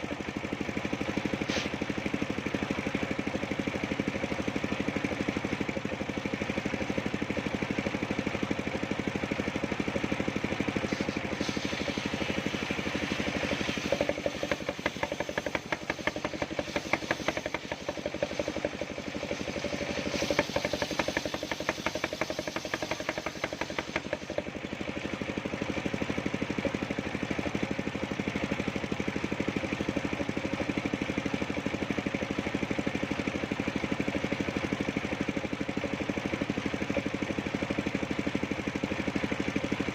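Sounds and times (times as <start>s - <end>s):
circular sawmill running: 0.0s - 39.9s
saw blade rasping through timber: 10.8s - 24.5s.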